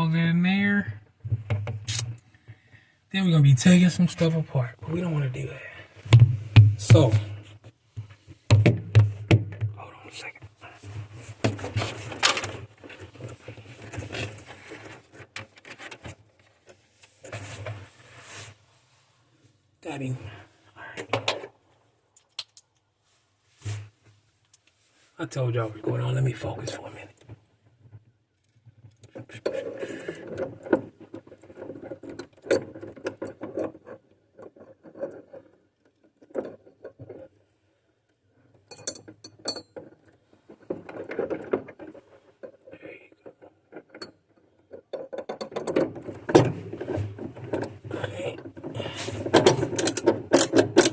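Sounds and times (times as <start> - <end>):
hand tools and plastic parts rattling: 10.6 - 18.0, 25.8 - 50.9
small sharp clicks and knocks: 22.2 - 22.9, 38.1 - 50.9.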